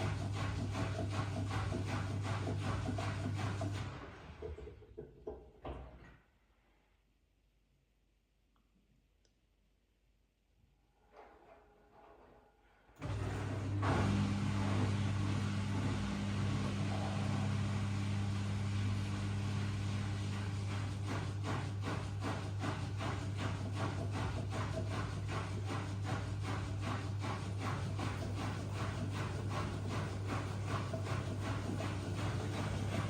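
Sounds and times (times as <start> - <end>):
washing machine humming: 0.0 - 4.6, 13.0 - 33.0.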